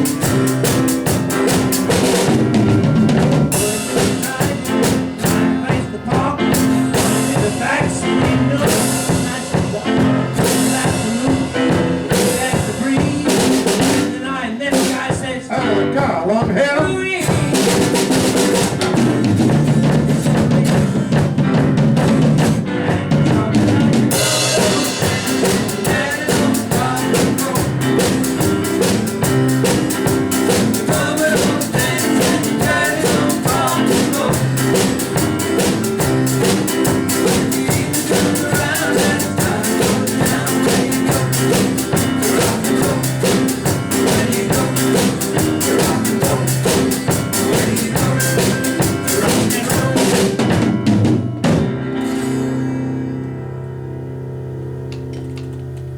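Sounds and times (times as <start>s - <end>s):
drum kit beat: 0.0s - 52.1s
bass guitar: 0.0s - 55.9s
piano: 0.0s - 55.9s
cymbals: 24.1s - 50.4s.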